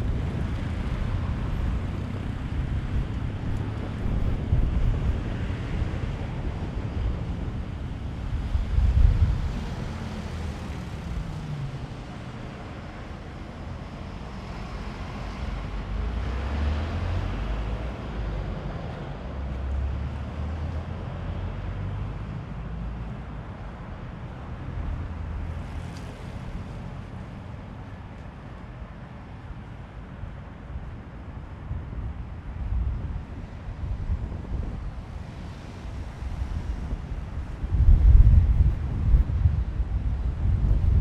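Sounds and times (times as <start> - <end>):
wind buffeting microphone: 0.0 - 12.0, 31.5 - 41.0.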